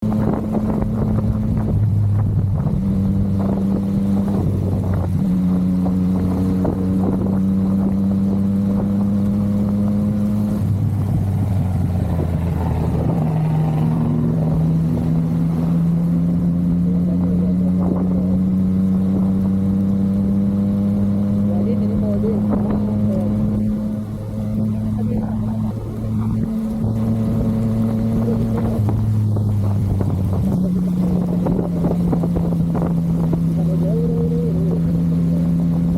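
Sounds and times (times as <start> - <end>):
motorcycle engine running: 0.0 - 35.9.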